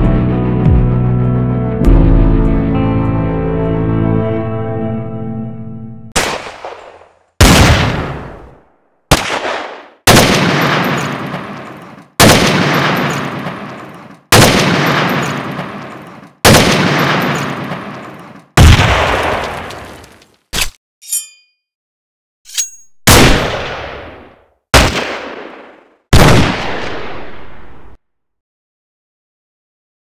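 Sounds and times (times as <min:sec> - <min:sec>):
gunshots with echoing tails: 0:06.2 - 0:20.0, 0:23.1 - 0:28.0.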